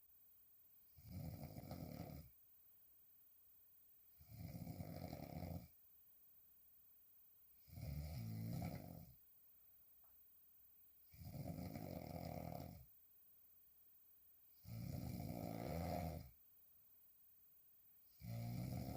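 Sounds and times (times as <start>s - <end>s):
woman snoring: 1.0s - 2.3s, 4.2s - 5.7s, 7.7s - 9.1s, 11.2s - 12.8s, 14.6s - 16.4s, 18.2s - 18.9s.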